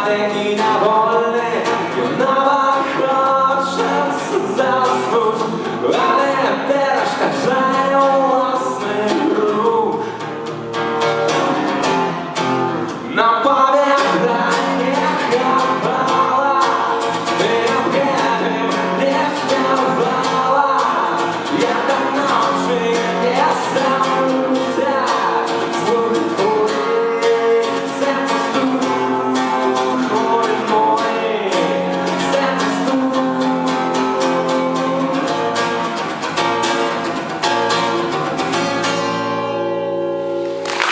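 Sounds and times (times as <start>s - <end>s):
man singing: 0.0s - 10.2s, 12.7s - 36.0s
guitar accompaniment: 0.0s - 40.9s.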